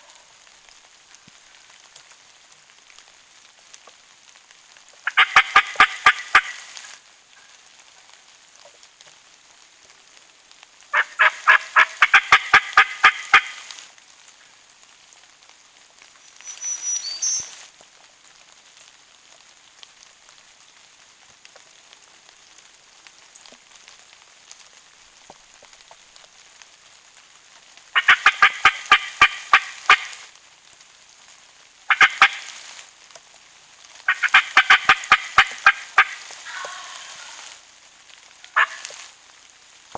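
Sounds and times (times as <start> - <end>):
faint rain hiss: 0.0 - 39.9
turkey gobbling: 5.1 - 6.8, 10.9 - 13.7, 28.0 - 30.3, 31.9 - 32.6, 34.1 - 37.6, 38.6 - 39.0.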